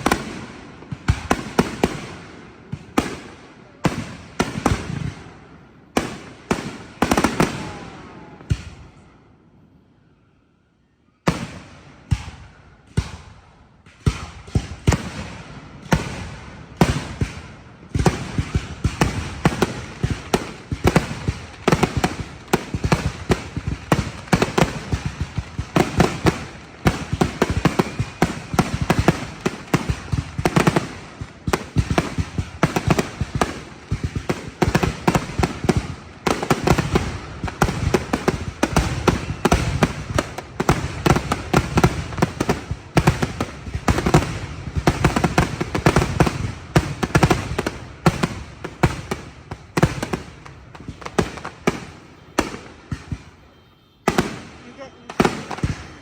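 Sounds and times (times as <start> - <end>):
fireworks bangs and cracks: 0.0 - 9.0, 11.3 - 56.0.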